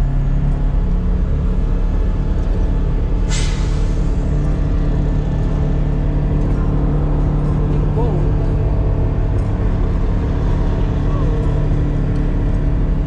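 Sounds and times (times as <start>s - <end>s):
road noise: 0.0s - 13.0s
vehicle engine hum: 0.0s - 13.0s
short sharp hiss: 3.3s - 3.9s.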